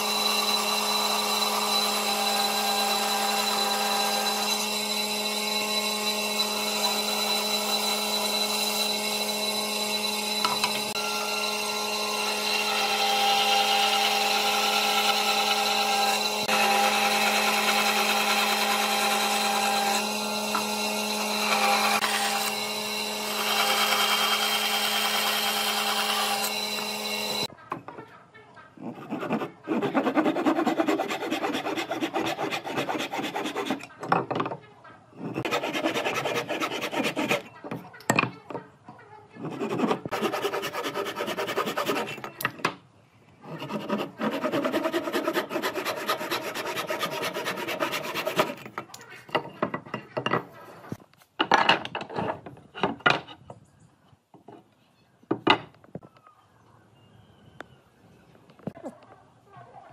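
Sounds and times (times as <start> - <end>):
power tool motor whining: 0.0 - 27.5
rasping on wood: 28.8 - 33.9, 35.2 - 37.6, 39.4 - 42.3, 43.4 - 48.7.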